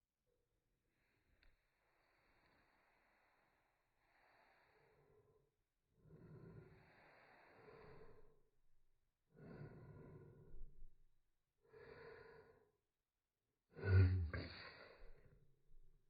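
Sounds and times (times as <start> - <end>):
breathy intake breaths: 6.0 - 8.4
woman sneezing slowed down: 13.8 - 15.3.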